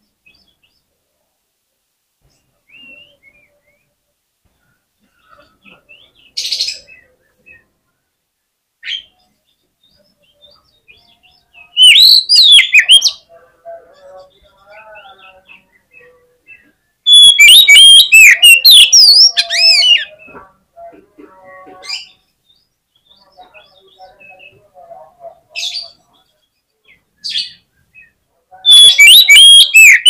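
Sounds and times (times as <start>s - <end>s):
songbird whistled song: 2.3s - 4.0s, 5.7s - 7.8s, 8.8s - 13.3s, 14.0s - 20.4s, 25.7s - 30.0s.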